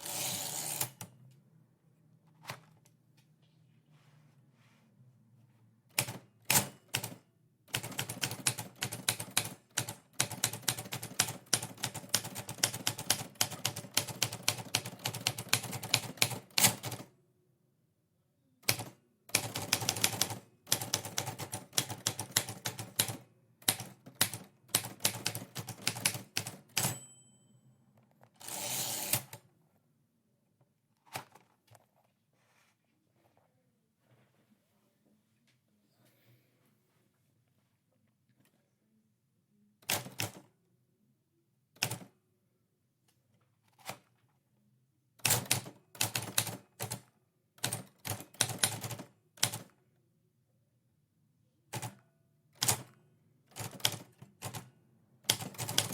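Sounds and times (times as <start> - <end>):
typewriter keys typing: 6.0 - 17.1, 18.7 - 27.0, 45.2 - 47.0, 47.6 - 49.7, 52.6 - 52.9, 53.6 - 54.6, 55.3 - 55.9
typewriter margin bell ring: 26.7 - 27.6
typewriter carriage return rasp: 28.4 - 29.4, 55.3 - 55.9.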